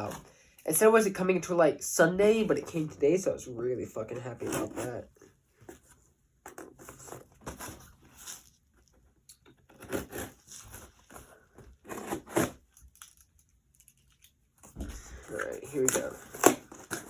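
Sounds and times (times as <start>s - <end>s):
scratchy tearing: 4.3s - 5.1s, 9.7s - 17.0s.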